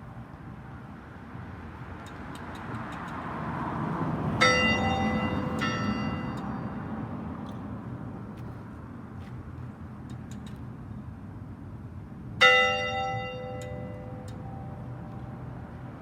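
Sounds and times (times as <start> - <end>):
bell struck: 4.4 - 6.8, 12.4 - 14.8.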